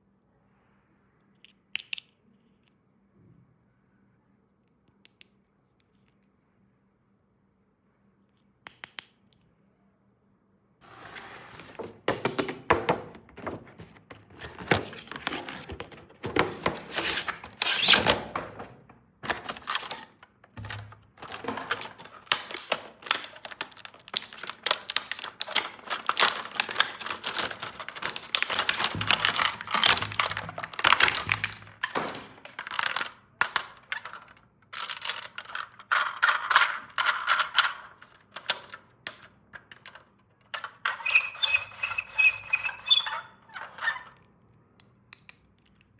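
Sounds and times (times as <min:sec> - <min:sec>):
packaging crinkling: 0:19.2 - 0:37.6
plastic pieces clicking: 0:21.2 - 0:41.4.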